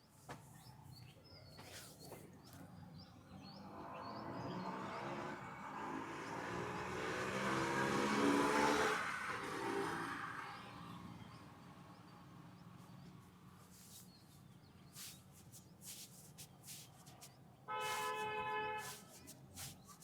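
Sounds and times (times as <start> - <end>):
motor vehicle passing: 3.4 - 14.0.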